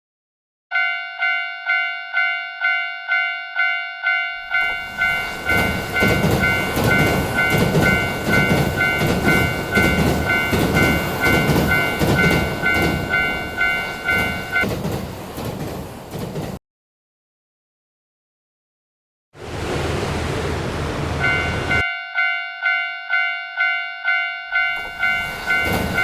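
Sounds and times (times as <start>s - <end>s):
railroad crossing bell ringing: 0.7s - 14.7s, 21.2s - 26.0s
train rumbling past: 4.1s - 16.6s, 19.4s - 26.0s
train wheels clickety-clack: 4.6s - 16.6s, 24.6s - 26.0s.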